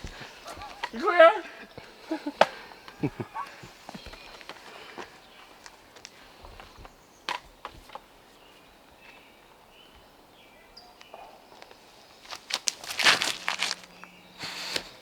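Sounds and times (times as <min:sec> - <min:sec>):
running footsteps: 0:00.0 - 0:08.2, 0:11.2 - 0:15.0.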